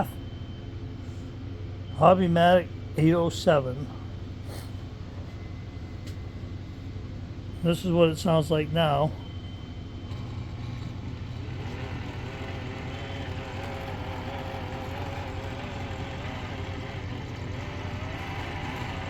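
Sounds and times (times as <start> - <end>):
sewing machine running: 10.1 - 19.0.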